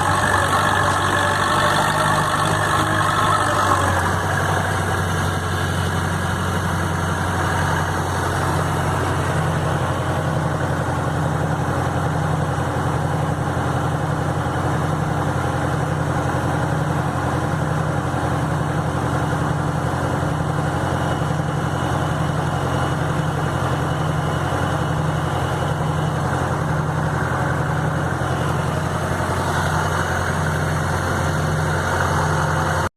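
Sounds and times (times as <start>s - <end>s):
tractor engine droning: 0.0s - 32.9s.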